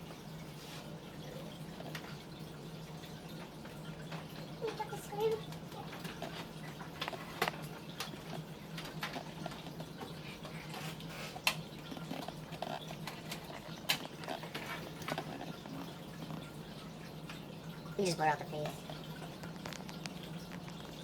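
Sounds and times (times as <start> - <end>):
small clicks of computer parts: 3.4 - 16.5, 18.8 - 21.0.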